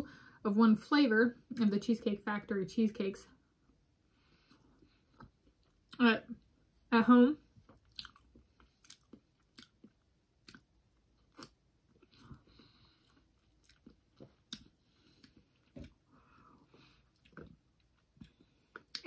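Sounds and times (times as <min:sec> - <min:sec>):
person chewing food: 0:04.4 - 0:06.0, 0:07.6 - 0:19.0.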